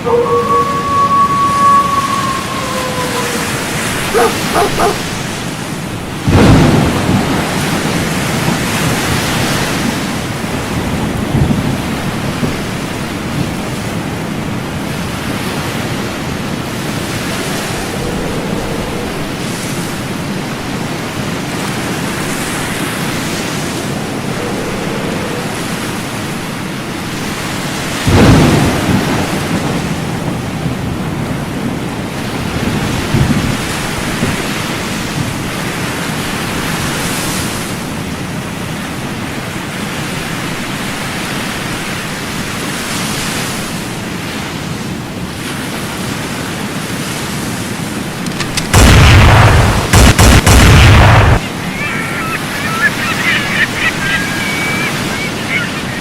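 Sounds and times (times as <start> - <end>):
thunder rumbling: 0.0 - 36.7, 48.2 - 56.0
steady rain: 0.0 - 56.0.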